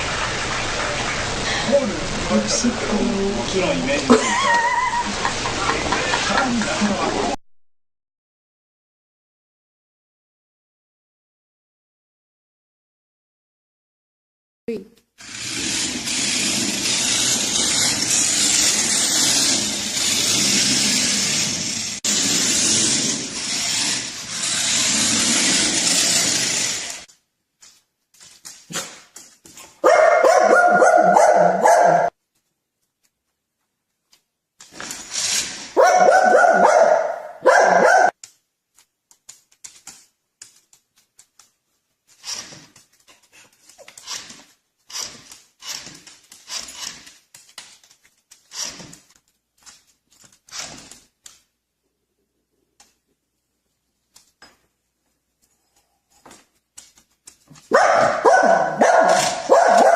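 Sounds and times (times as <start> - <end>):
dog barking: 29.8 - 32.1, 35.8 - 38.1, 57.7 - 59.9.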